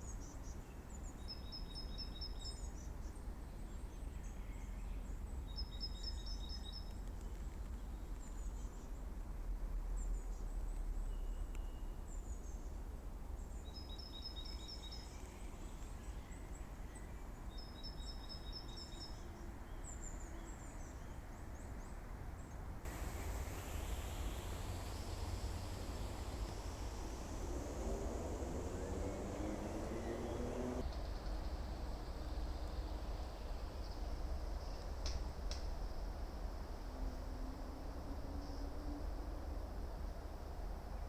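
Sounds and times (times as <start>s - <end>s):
loud hiss: 22.9s - 30.8s
low outdoor rumble: 22.9s - 30.9s.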